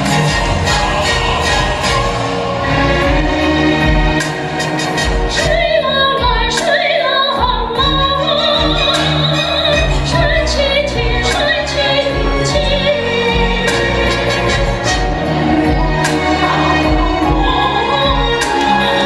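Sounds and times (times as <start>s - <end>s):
instrumental accompaniment: 0.0s - 19.0s
woman singing: 5.3s - 19.0s.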